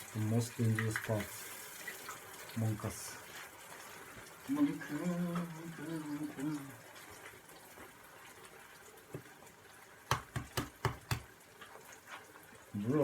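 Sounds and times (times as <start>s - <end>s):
tomatoes simmering in a pan: 0.0s - 13.0s
egg shells knocking on hard edge: 10.1s - 11.3s.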